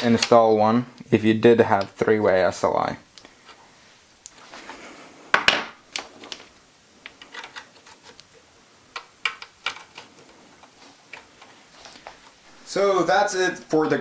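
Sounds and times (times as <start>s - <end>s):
computer parts clicking and rattling: 9.0s - 11.6s.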